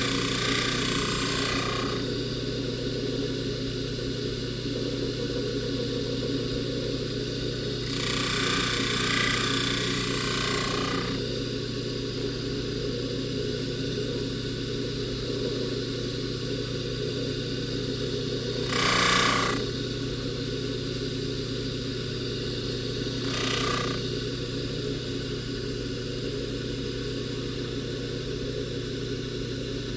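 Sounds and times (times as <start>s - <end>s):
polishing motor humming: 0.0s - 3.3s, 5.1s - 12.4s, 17.8s - 20.4s, 22.2s - 24.5s.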